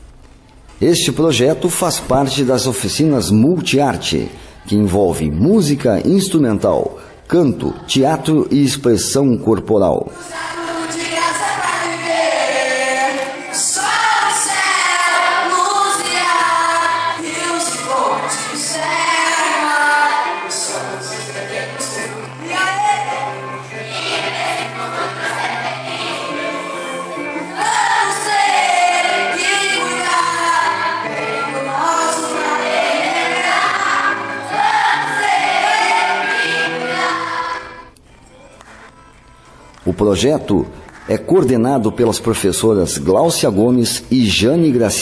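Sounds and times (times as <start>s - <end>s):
choir singing long held notes: 10.2s - 37.9s.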